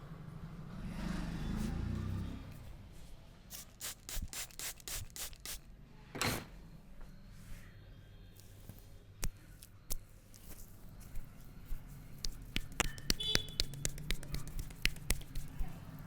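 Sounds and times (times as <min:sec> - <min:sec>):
hands rubbing hair and scalp: 0:09.2 - 0:16.0.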